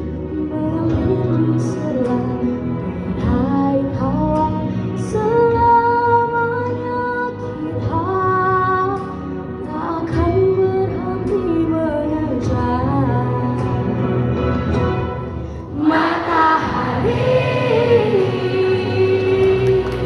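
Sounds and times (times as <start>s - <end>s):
woman singing: 0.1s - 14.1s, 15.7s - 20.0s
musical accompaniment: 13.4s - 20.0s.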